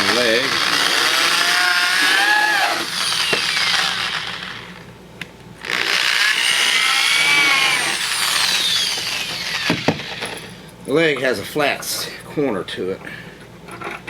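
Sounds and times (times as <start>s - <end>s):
power drill boring into wood: 0.0s - 4.8s, 5.6s - 10.6s
drill click: 2.8s - 4.8s, 5.6s - 10.6s.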